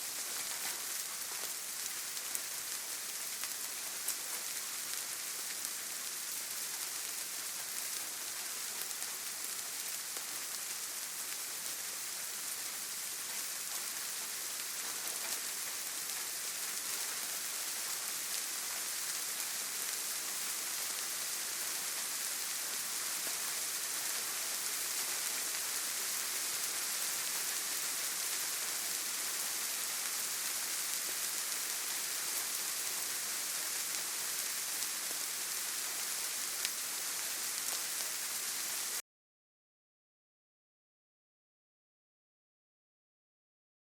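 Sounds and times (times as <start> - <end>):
steady rain falling: 0.0 - 39.0.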